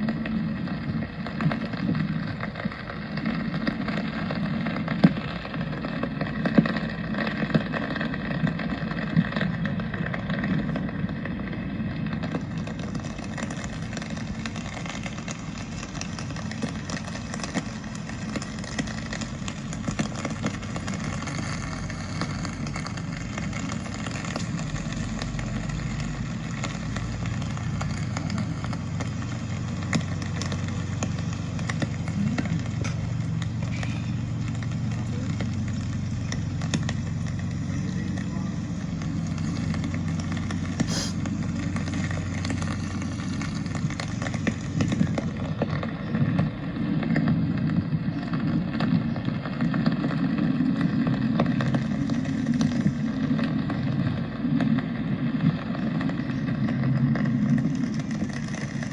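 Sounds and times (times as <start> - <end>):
traffic hum: 0.0 - 58.9
vehicles passing: 0.0 - 58.9
voices of passersby: 30.5 - 39.8, 40.8 - 41.4.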